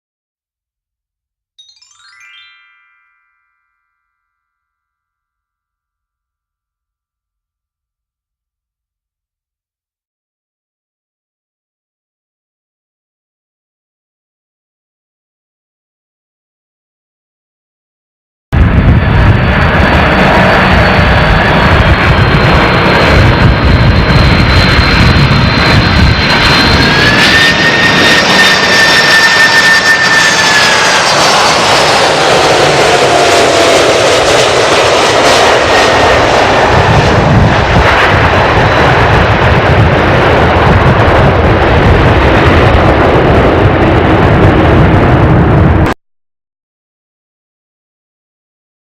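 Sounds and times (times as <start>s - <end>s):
jet engines rumbling: 18.6s - 46.0s
turbine whine: 18.6s - 46.0s.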